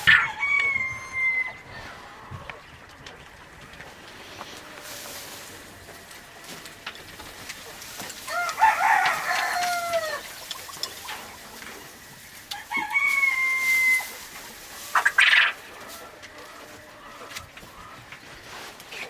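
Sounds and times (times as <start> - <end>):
rooster crowing: 0.0 - 2.6, 8.2 - 10.3, 12.5 - 14.2.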